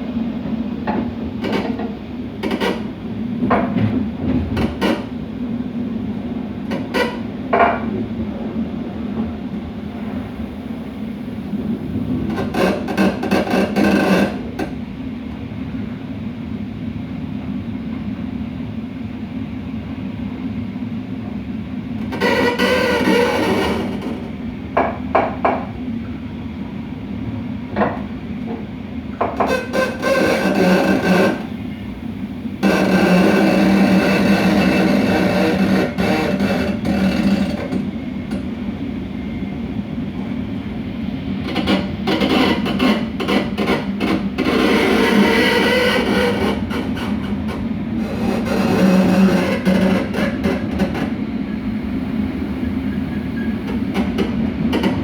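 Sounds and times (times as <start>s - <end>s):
low train running hum: 0.0s - 55.0s
coupler grating noise: 22.1s - 24.2s, 29.4s - 31.6s, 32.6s - 38.4s, 41.5s - 47.4s.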